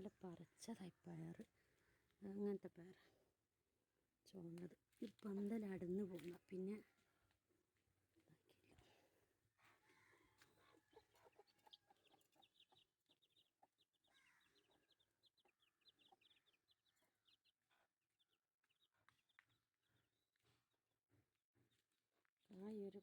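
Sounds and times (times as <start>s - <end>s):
chickens clucking: 10.4s - 13.8s
chicks peeping: 10.9s - 13.9s, 14.6s - 17.0s.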